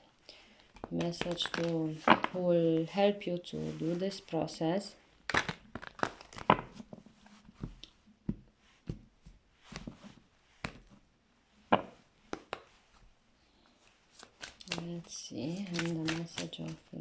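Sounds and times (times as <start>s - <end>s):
cards shuffled on a table: 0.7s - 2.4s, 5.3s - 11.0s, 11.8s - 13.0s, 14.1s - 17.0s.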